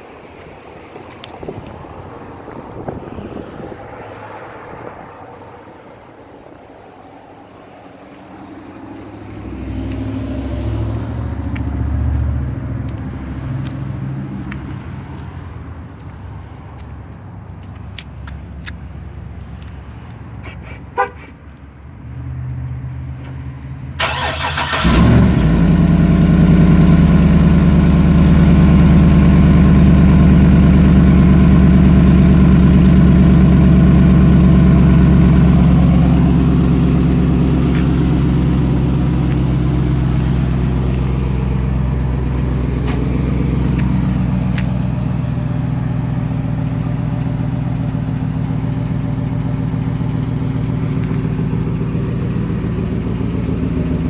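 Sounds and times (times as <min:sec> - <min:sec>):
engine cranking and starting: 0:24.0 - 0:26.3
loud engine fast idle: 0:24.0 - 0:27.6.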